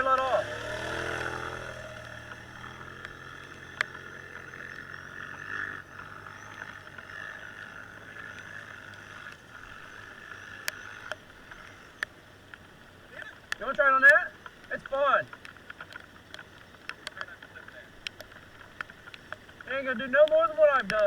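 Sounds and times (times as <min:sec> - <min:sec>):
vehicle motor running: 0:00.0 - 0:12.8
sharp clicks: 0:00.1 - 0:04.5, 0:10.6 - 0:12.6, 0:13.5 - 0:21.0.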